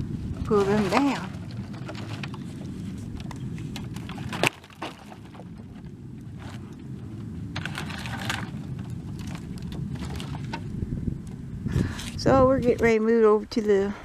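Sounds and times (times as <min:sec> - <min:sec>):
wood scraping rustle: 0:00.0 - 0:10.8
steady low rumble: 0:00.0 - 0:14.0.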